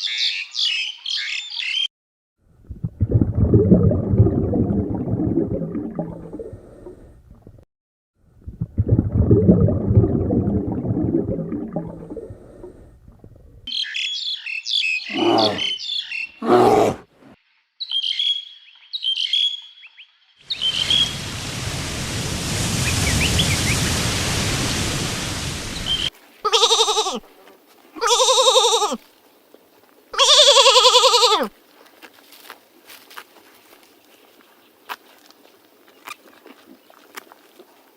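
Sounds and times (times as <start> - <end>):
wavering bleats: 15.1 - 15.7, 26.4 - 27.2, 28.0 - 29.0, 30.2 - 31.5
rough noisy low animal sound: 15.1 - 15.8, 16.4 - 17.2
steady hiss: 20.5 - 26.1.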